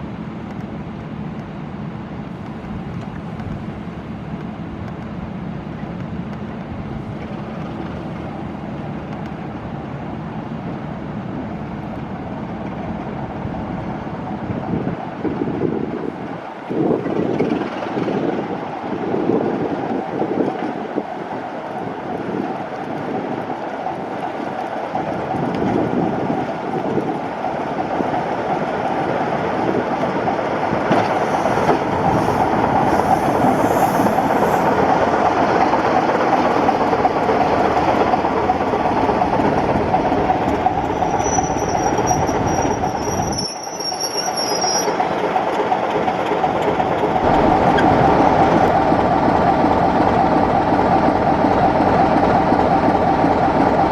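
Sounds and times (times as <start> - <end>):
train wheels rumbling on rails: 0.0 - 53.9
high thin wheel squeal: 40.8 - 45.0.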